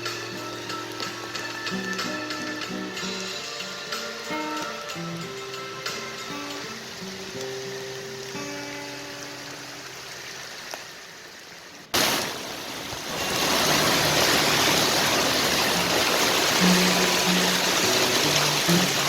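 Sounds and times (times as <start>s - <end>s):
soft background music: 0.0s - 10.1s
heavy rain pouring: 0.0s - 19.0s.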